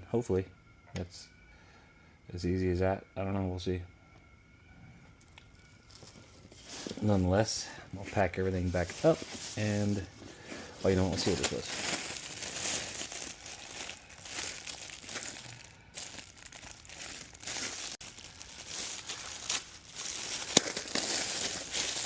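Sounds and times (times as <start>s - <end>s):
plastic packaging crinkling: 8.1s - 22.0s.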